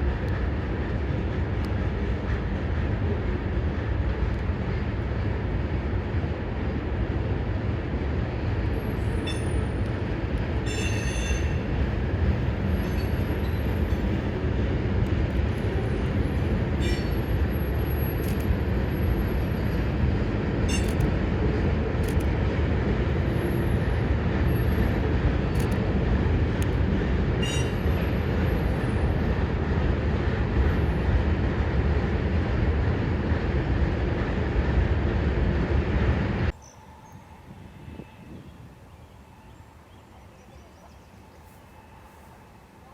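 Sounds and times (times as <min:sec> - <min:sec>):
train wheels rumbling on rail: 0:00.0 - 0:42.9
wheel squeals: 0:10.6 - 0:11.7.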